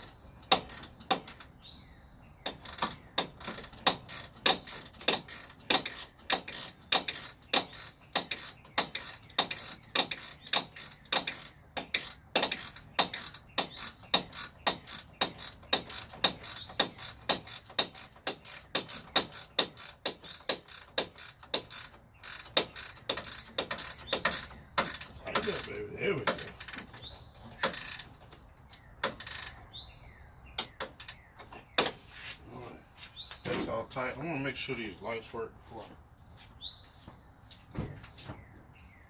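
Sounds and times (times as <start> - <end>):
ratchet wrench clicking: 0.0 - 1.5, 2.5 - 26.9, 27.6 - 28.1, 29.0 - 29.6.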